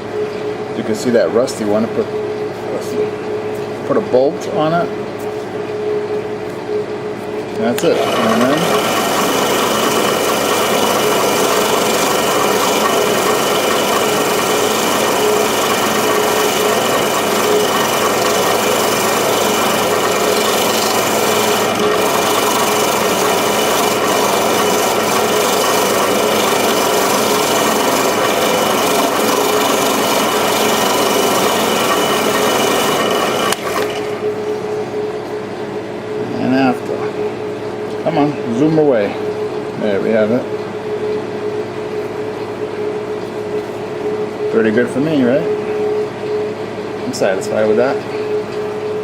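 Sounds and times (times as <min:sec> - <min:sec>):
power tool scouring rust off metal: 0:07.9 - 0:34.1.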